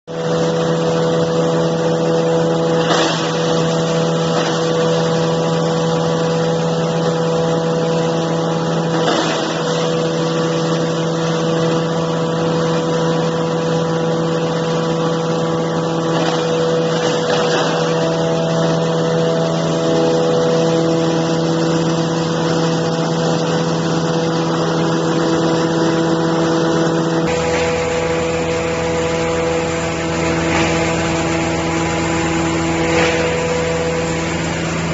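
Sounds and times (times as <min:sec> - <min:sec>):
grinder machine humming: 0:00.0 - 0:34.9
noisy grinding surges: 0:15.6 - 0:34.9.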